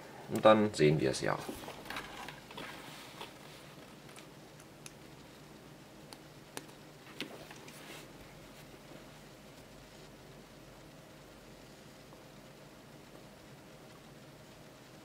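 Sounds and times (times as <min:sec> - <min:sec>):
faint steady low hum: 0:00.0 - 0:15.0
hands clicking and tapping a fan: 0:06.1 - 0:07.7.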